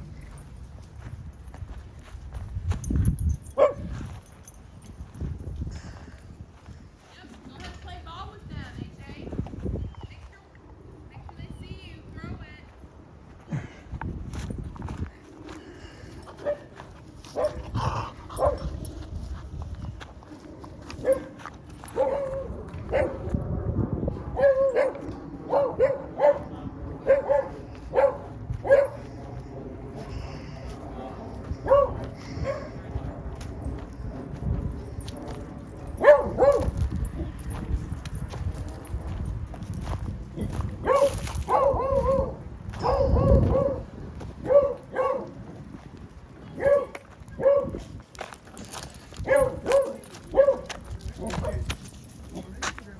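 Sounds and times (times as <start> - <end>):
dog barking: 3.6 - 4.0, 16.4 - 16.7, 17.3 - 17.7, 18.4 - 18.7, 21.0 - 23.3, 24.3 - 29.0, 31.6 - 32.8, 36.0 - 36.8, 40.8 - 45.4, 46.6 - 47.8, 49.2 - 51.7.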